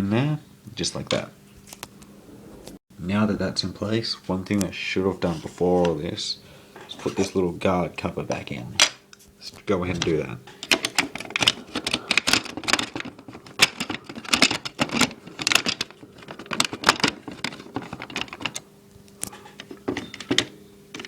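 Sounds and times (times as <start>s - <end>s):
plastic parts clicking and rattling: 9.9s - 21.0s.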